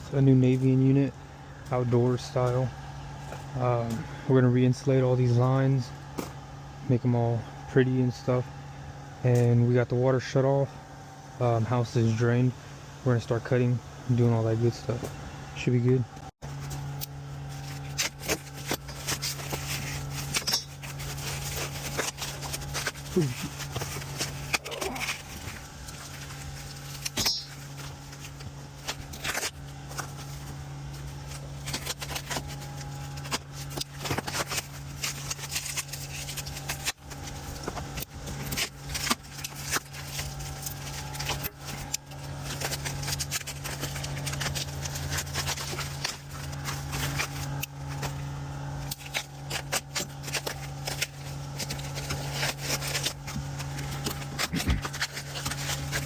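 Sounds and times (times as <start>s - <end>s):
steady low hum: 0.0s - 56.0s
tools and metal parts handled: 16.6s - 56.0s.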